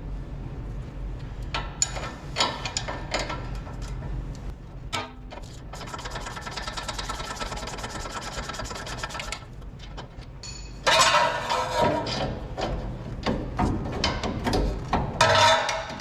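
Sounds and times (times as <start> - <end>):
metallic scraping and rubbing: 10.9 - 12.4.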